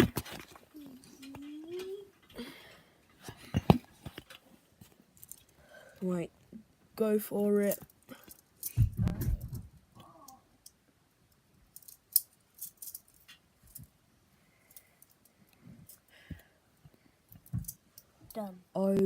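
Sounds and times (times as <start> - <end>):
handcuffs clicking and rattling: 11.8 - 13.9.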